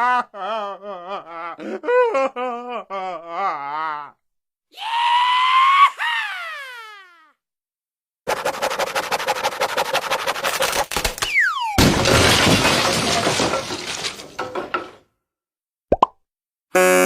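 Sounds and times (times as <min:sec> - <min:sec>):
crash of shattering: 0:11.0 - 0:15.0.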